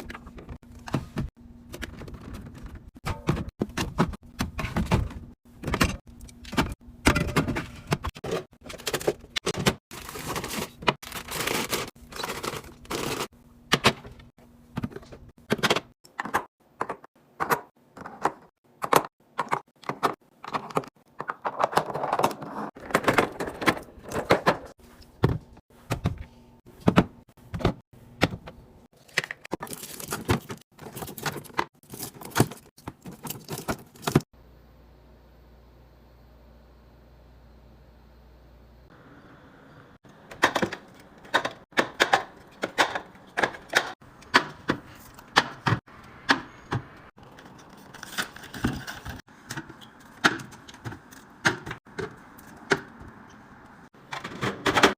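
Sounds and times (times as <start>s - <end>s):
food containers clattering: 0.1s - 26.2s, 26.8s - 34.3s
faint steady hum: 34.4s - 40.0s.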